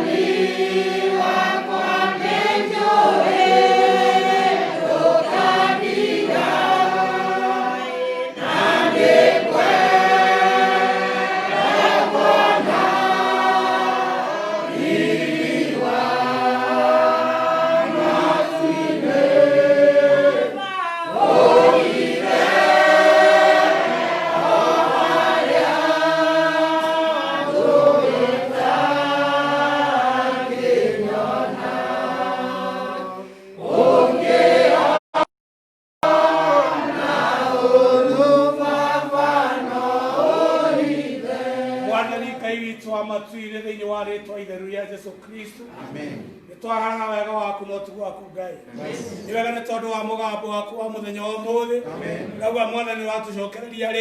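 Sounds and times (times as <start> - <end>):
choir singing a hymn: 0.0 - 35.0, 36.0 - 42.5.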